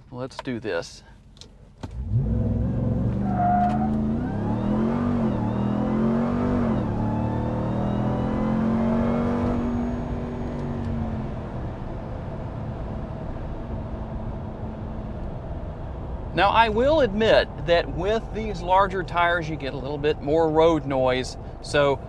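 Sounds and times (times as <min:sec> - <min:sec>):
engine accelerating at full throttle: 0:02.0 - 0:11.5.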